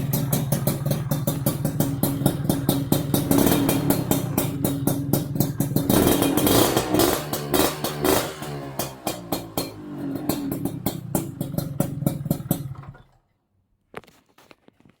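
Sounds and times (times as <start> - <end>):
motorcycle engine exhaust pulses: 0.0 - 13.1.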